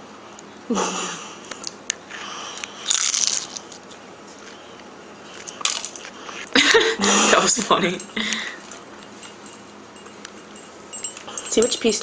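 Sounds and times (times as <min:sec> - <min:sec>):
crunchy rustling noise: 0:02.7 - 0:06.5.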